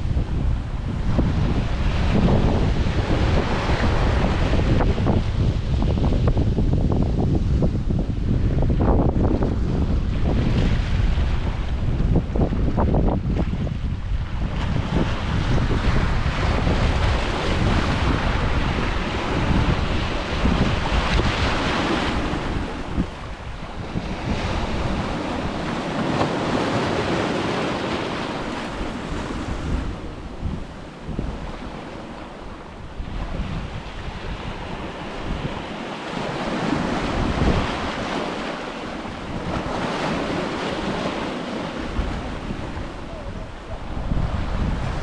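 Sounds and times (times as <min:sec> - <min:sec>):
ocean waves washing onto beach: 0:00.0 - 0:45.0
wind buffeting microphone: 0:00.0 - 0:45.0.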